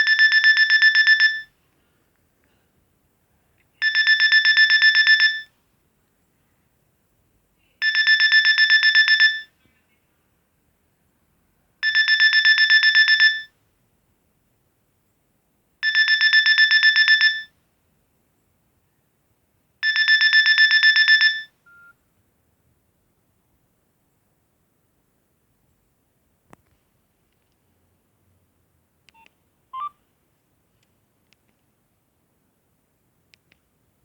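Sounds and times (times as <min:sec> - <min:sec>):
mobile phone ringtone trill: 0:00.0 - 0:01.5, 0:03.8 - 0:05.5, 0:07.8 - 0:09.5, 0:11.8 - 0:13.5, 0:15.8 - 0:17.5, 0:19.8 - 0:21.9
short faint beep: 0:21.3 - 0:22.0.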